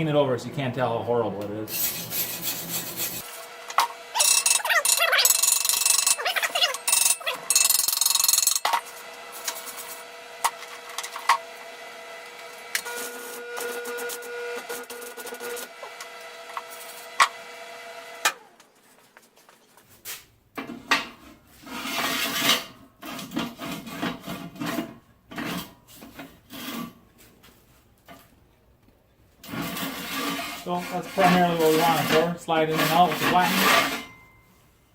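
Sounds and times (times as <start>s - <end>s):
steel tube scraping in sleeve: 1.7s - 3.4s, 21.2s - 27.8s, 29.4s - 34.5s.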